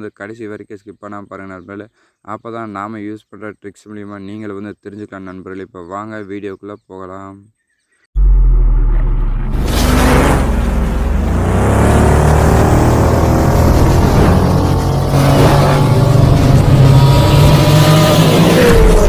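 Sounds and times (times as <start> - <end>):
car engine revving: 8.2 - 19.0.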